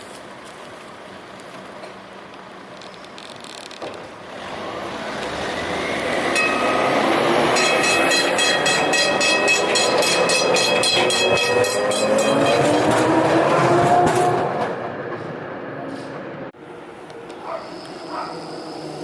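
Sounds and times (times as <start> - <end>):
tram running past: 4.2 - 19.0.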